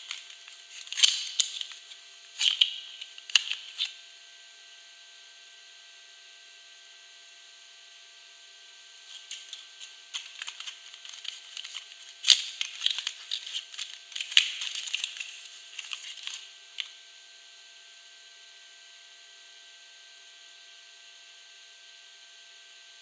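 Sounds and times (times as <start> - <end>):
packaging snaps: 0.0 - 3.9, 9.1 - 16.9
packaging crinkling and tearing: 0.0 - 4.0, 9.0 - 17.0.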